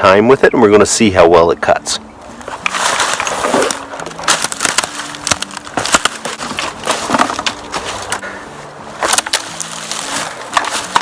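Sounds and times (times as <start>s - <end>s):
wood cracking and snapping: 2.4s - 8.2s, 9.0s - 11.0s.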